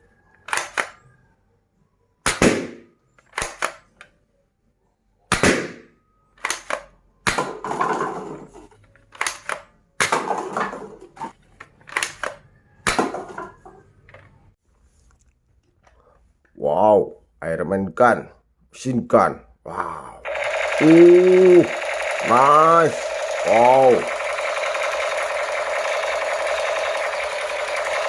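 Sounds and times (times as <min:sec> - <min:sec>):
toy gun cracks and snaps: 0:00.4 - 0:01.0, 0:03.2 - 0:04.1, 0:06.4 - 0:07.5, 0:09.1 - 0:10.1, 0:11.9 - 0:13.1.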